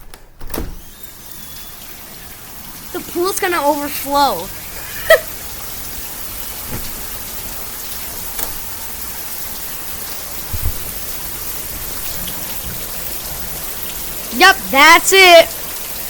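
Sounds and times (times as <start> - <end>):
heavy rain pouring: 0.8 - 16.0
low thump: 6.7 - 7.0.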